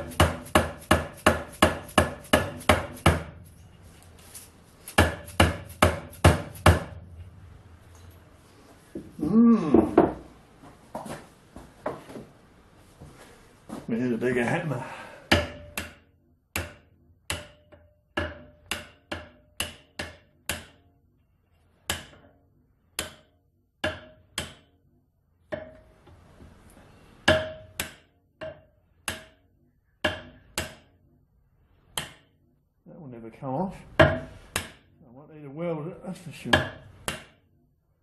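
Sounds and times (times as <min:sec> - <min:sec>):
hammer striking metal: 0:00.0 - 0:03.4, 0:04.9 - 0:07.0, 0:15.3 - 0:20.8, 0:23.0 - 0:24.7, 0:27.2 - 0:29.4, 0:34.0 - 0:34.9, 0:36.5 - 0:37.4.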